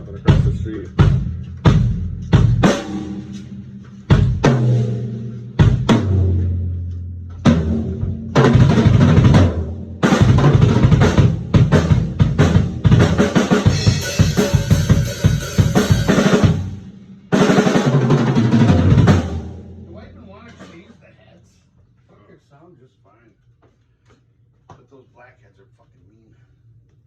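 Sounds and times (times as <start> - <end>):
drum kit playing: 0.0 - 21.0
cymbals washing: 13.6 - 16.9.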